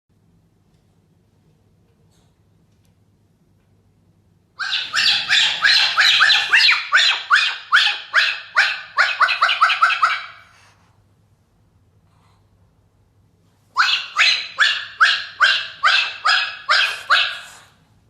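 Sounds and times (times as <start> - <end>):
cockatiel squawking: 4.6 - 10.5, 13.8 - 17.6.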